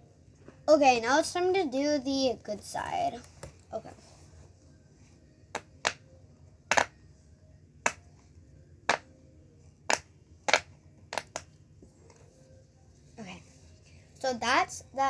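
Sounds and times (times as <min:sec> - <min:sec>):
fidget toy bubbles popping: 0:06.7 - 0:07.0, 0:09.9 - 0:11.5.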